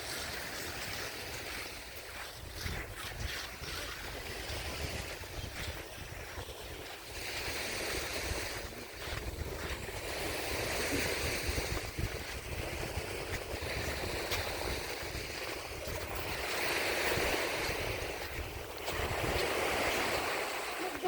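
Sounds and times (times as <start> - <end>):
sea waves washing onto beach: 0.0 - 21.0
wind buffeting microphone: 0.0 - 21.0.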